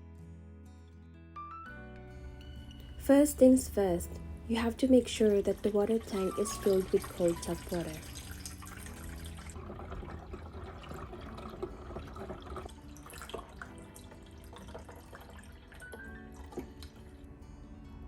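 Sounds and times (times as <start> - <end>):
tap water filling a tank: 5.9 - 17.1.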